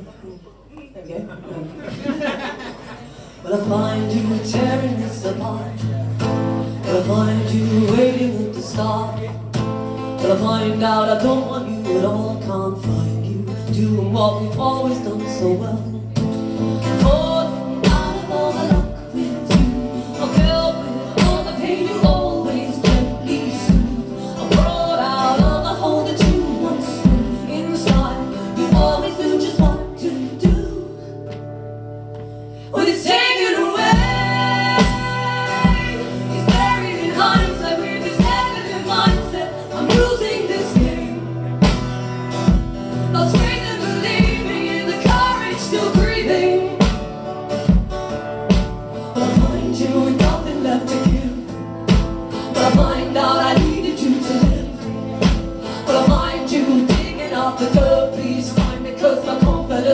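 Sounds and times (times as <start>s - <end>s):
folk-pop song performed live: 0.0s - 59.9s
guitars: 1.9s - 59.9s
person singing: 3.4s - 31.4s, 32.7s - 41.9s, 43.0s - 47.2s, 48.9s - 59.9s.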